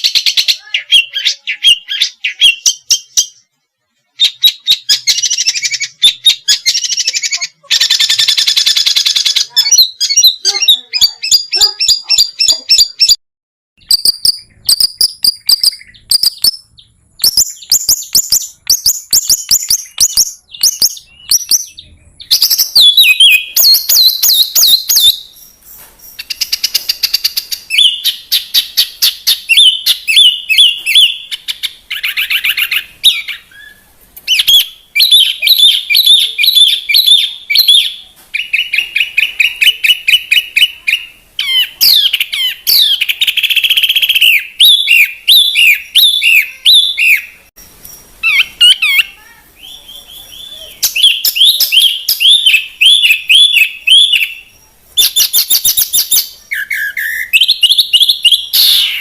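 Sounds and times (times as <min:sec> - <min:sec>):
songbird trilling and chirping: 0:00.0 - 0:13.2, 0:13.8 - 0:59.0.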